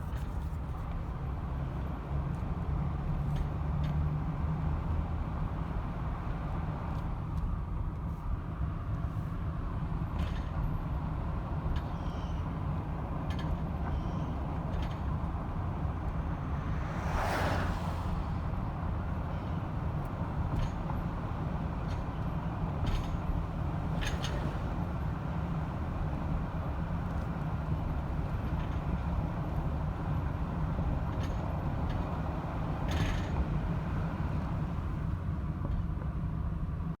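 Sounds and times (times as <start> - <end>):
pickup truck rumble: 14.4 - 35.2
rushing swell: 16.4 - 18.7.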